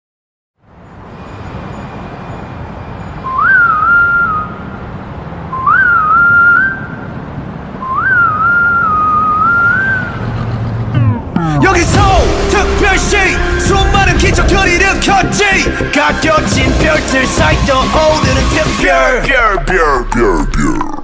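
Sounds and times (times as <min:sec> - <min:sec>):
whistled melody: 0:03.1 - 0:04.7, 0:05.5 - 0:07.0, 0:07.8 - 0:10.2, 0:12.2 - 0:20.0.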